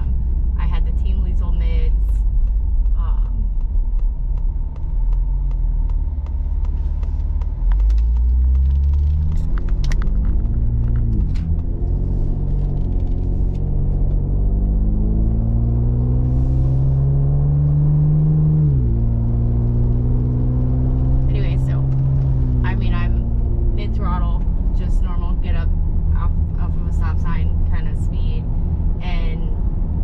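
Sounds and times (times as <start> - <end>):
car engine accelerating: 0.0 - 30.0
light regular ticks: 2.4 - 11.8.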